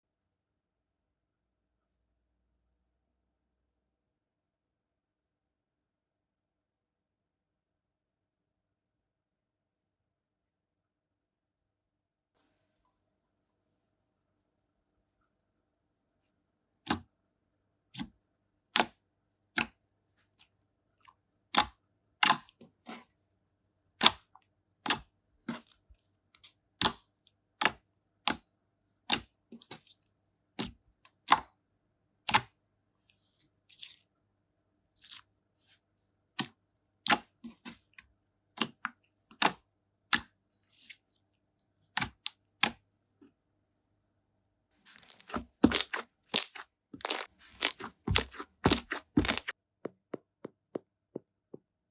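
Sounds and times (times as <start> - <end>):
slime popping: 44.9 - 49.5.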